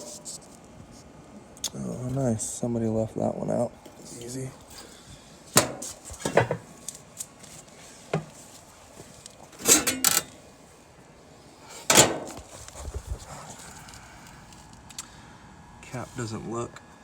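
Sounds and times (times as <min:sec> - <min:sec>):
sheet metal clanks and rattles: 0:09.6 - 0:10.3.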